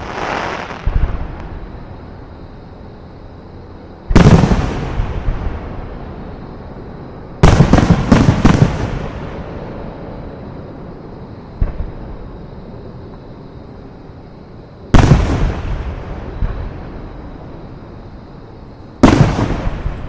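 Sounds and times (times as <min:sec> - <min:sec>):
fireworks bursting: 0:00.0 - 0:01.6, 0:04.1 - 0:06.0, 0:07.4 - 0:09.6, 0:14.9 - 0:17.0, 0:19.0 - 0:20.0.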